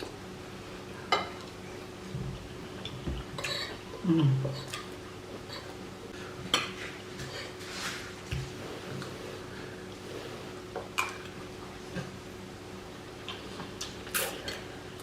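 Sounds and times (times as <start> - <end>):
person humming: 3.9 - 4.7.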